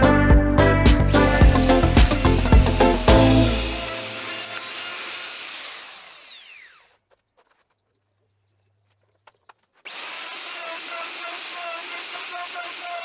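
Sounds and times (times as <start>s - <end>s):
power tool whine: 1.2s - 7.0s, 9.9s - 13.0s.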